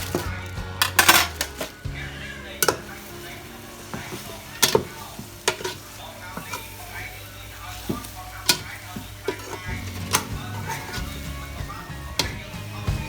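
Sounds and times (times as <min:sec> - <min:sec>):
metal utensil clinking on pan: 0:00.0 - 0:01.8, 0:02.6 - 0:07.0, 0:07.7 - 0:11.2, 0:12.2 - 0:12.4
food sizzling in a pan: 0:00.0 - 0:13.0.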